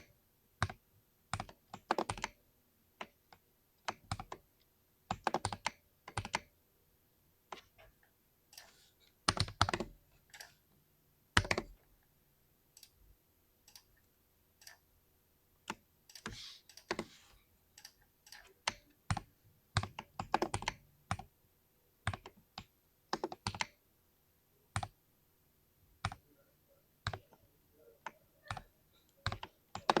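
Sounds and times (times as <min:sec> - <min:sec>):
mechanical keyboard clacks: 0:28.4 - 0:30.0.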